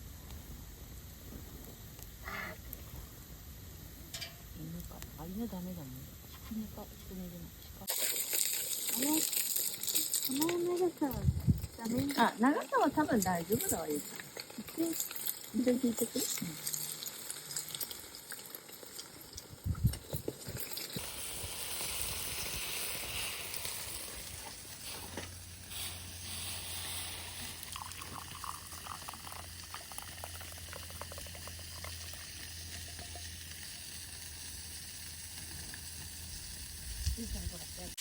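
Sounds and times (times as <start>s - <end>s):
meat sizzling in a frying pan: 11.8s - 19.6s, 20.5s - 38.0s.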